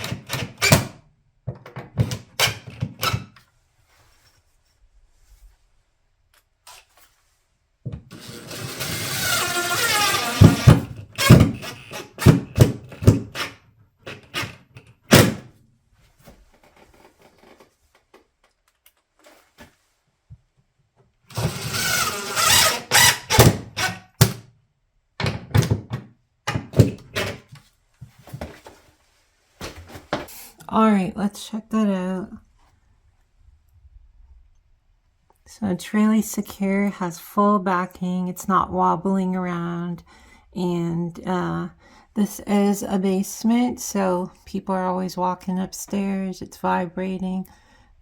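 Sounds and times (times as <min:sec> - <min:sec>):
cordless drill whining: 0:08.1 - 0:12.4, 0:21.3 - 0:24.0.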